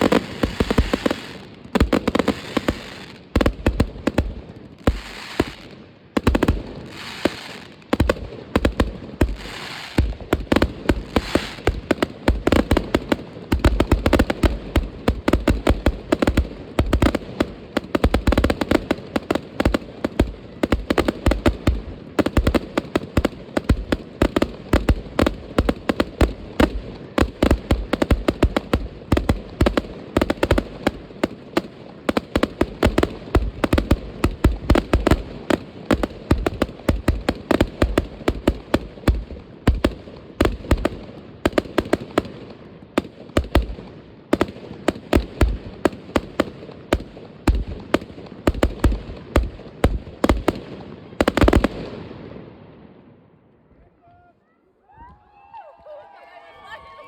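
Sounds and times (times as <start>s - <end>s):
fireworks hissing bursts: 0.0s - 8.0s, 8.6s - 15.6s
fireworks and firecrackers banging: 0.0s - 53.1s.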